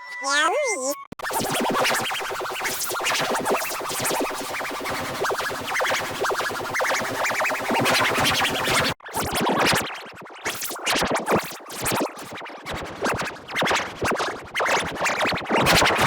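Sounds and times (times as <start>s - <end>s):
distorted stuttering audio effects: 0.1s - 1.6s.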